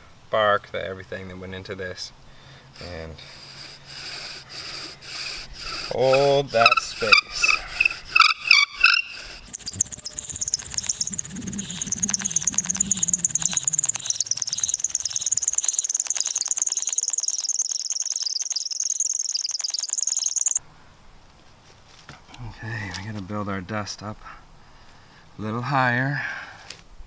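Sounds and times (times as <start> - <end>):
bow drill spindle squealing: 2.8 - 20.6.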